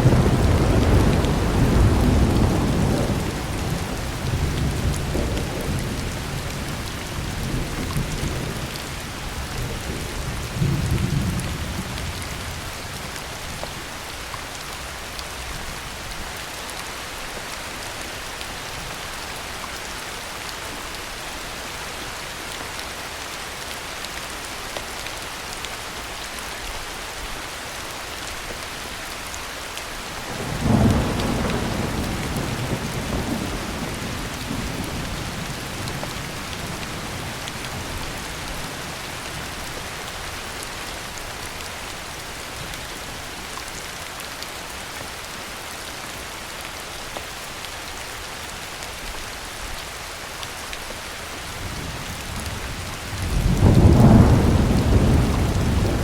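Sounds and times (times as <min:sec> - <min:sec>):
heavy rain falling: 0:00.0 - 0:56.0
thunder rolling: 0:53.1 - 0:56.0.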